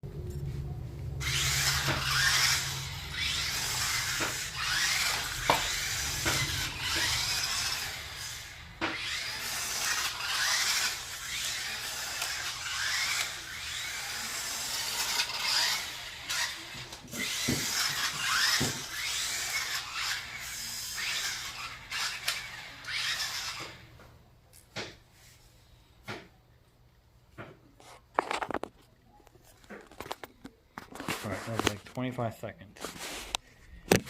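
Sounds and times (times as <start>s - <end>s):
toy truck electric motors whining: 1.2s - 23.9s
toy truck knocking into things: 17.2s - 18.9s.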